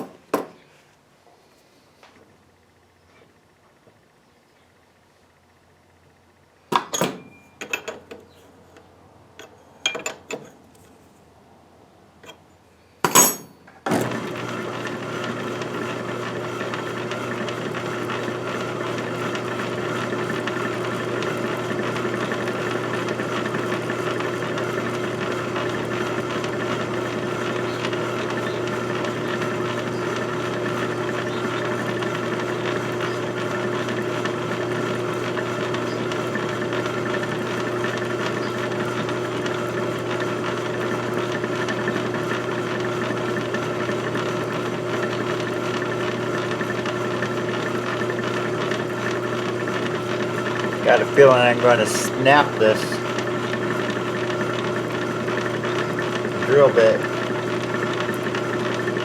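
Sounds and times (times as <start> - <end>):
electric drill running: 13.9 - 59.0.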